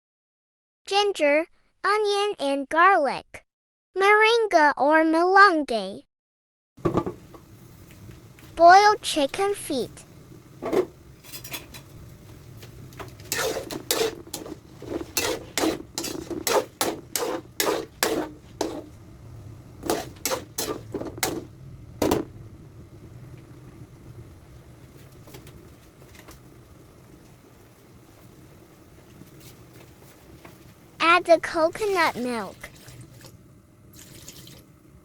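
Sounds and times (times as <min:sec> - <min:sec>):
kitchen utensils clattering: 0:10.6 - 0:12.0, 0:13.0 - 0:18.9, 0:19.8 - 0:22.3.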